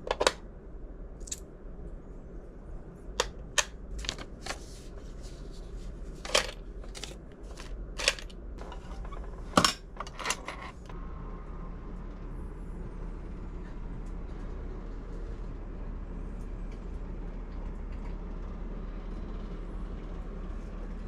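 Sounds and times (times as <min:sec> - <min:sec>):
low steady hum: 0:00.0 - 0:21.0.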